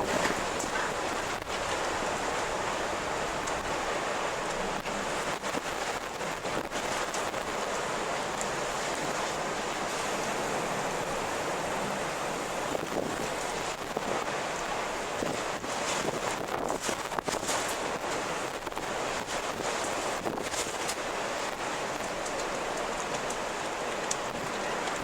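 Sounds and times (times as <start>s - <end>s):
faint crackles: 0.0s - 10.4s, 12.7s - 25.0s
strong wind blowing: 0.0s - 14.4s.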